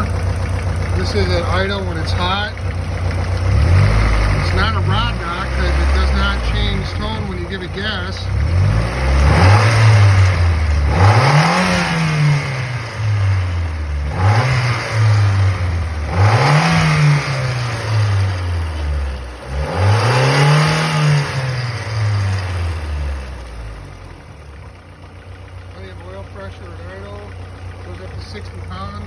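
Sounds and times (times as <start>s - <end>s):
car engine revving: 0.0s - 29.0s
engine knocking: 0.0s - 29.0s.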